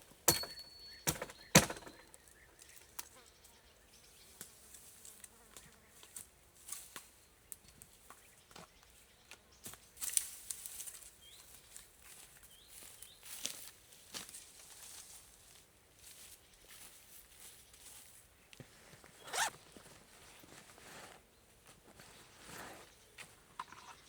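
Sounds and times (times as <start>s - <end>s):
axe chopping wood: 0.3s - 2.0s
wood rustling: 0.3s - 2.1s.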